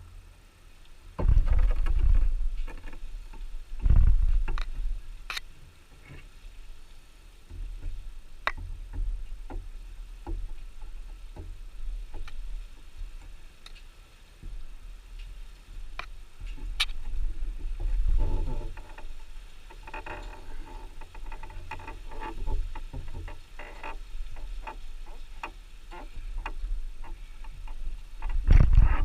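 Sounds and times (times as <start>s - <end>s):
sharp clicks and light knocks: 0.8s - 6.3s, 7.4s - 29.0s
low rumble: 1.1s - 5.3s.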